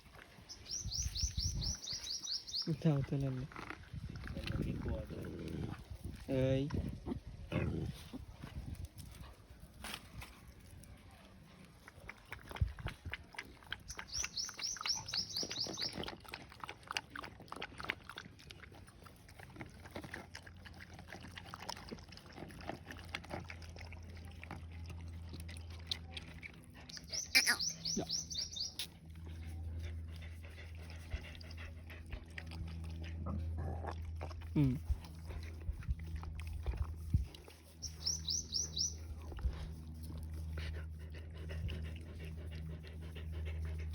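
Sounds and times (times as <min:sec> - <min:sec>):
dogs lapping and eating: 0:00.0 - 0:43.9
high rapid chirping trill: 0:27.1 - 0:28.9.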